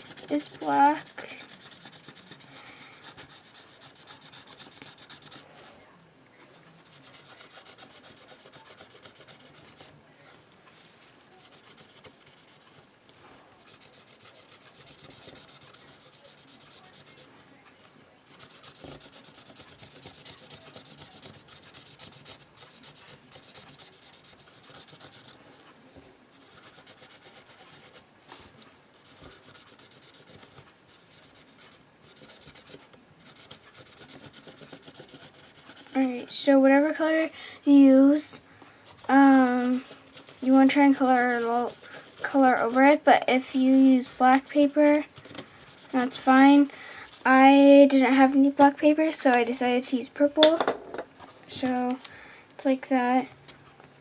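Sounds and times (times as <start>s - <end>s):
marker scribbling: 0.0s - 5.4s, 6.8s - 9.9s, 11.4s - 12.9s, 13.7s - 17.3s, 18.3s - 25.4s, 26.3s - 36.5s, 38.8s - 47.3s.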